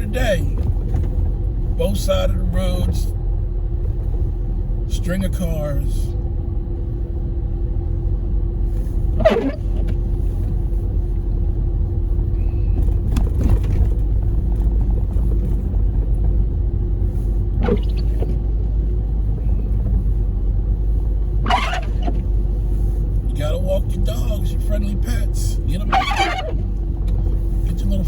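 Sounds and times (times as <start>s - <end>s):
car driving rumble: 0.0s - 28.0s.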